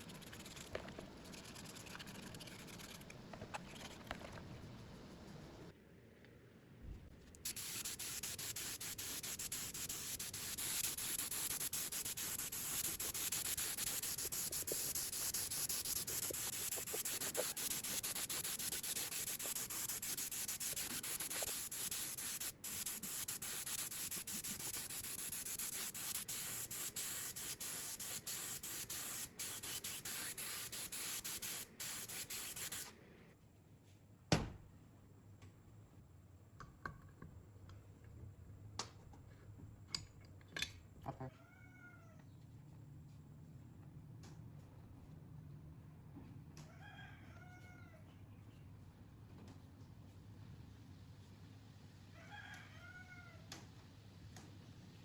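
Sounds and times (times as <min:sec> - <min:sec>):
sandpaper rasping: 0:00.0 - 0:03.1, 0:07.5 - 0:32.9.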